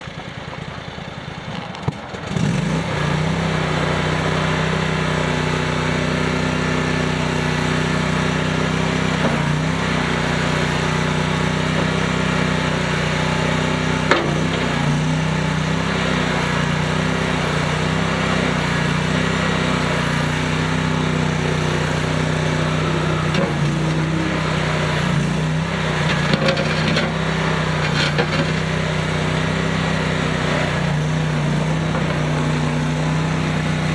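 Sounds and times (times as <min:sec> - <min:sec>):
engine starting and running: 0:00.0 - 0:33.9.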